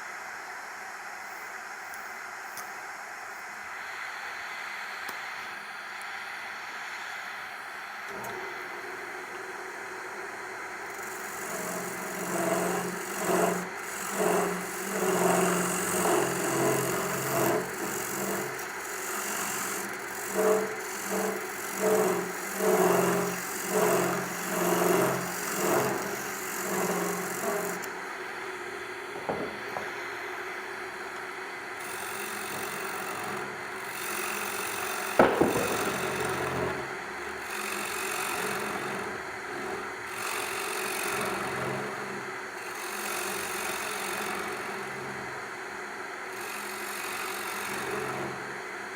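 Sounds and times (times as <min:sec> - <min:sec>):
wood lathe running: 0:10.1 - 0:30.2, 0:30.9 - 0:48.6
gouge cutting wood: 0:10.8 - 0:28.0, 0:29.1 - 0:30.0, 0:31.8 - 0:45.0, 0:46.4 - 0:48.3
sharp knock: 0:29.2 - 0:29.9, 0:35.2 - 0:36.7.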